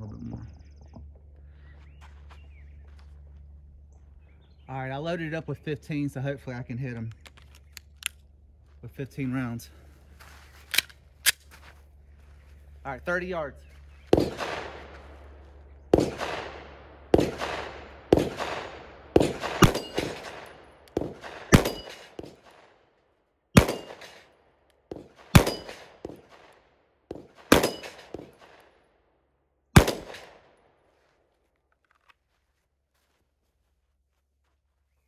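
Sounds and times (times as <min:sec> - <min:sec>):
pistol shots: 0:14.1 - 0:15.3, 0:15.9 - 0:22.8, 0:23.6 - 0:28.7, 0:29.8 - 0:30.6
bullet clanging on steel plate: 0:21.6 - 0:22.4.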